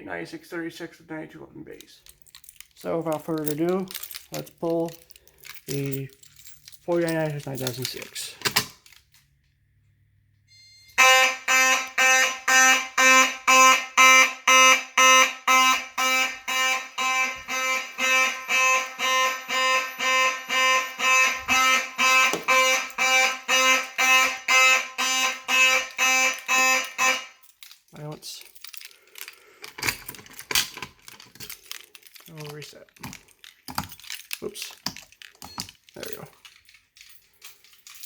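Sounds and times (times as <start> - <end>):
fire alarm horn blasts: 10.5 - 27.5.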